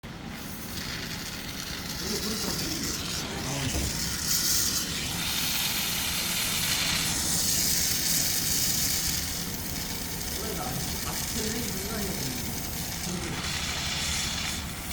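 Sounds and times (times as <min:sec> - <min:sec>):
welding arc hissing: 0:00.1 - 0:14.9.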